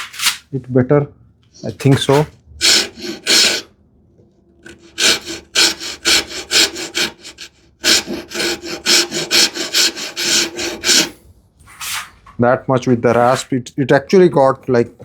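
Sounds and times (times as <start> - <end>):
wood rasp filing wood: 1.8 - 3.7, 4.6 - 11.2.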